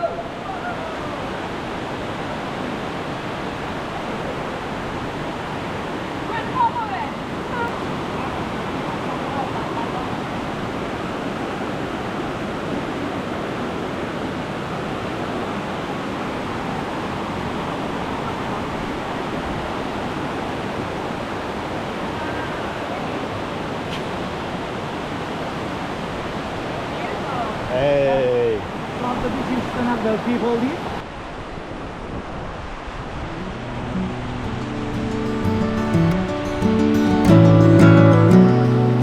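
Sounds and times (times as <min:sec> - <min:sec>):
waterfall rushing: 0:32.4 - 0:39.0.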